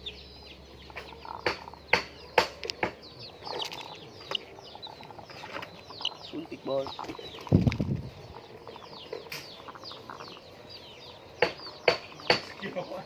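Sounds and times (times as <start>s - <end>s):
hens clucking and calling: 0.0s - 13.0s.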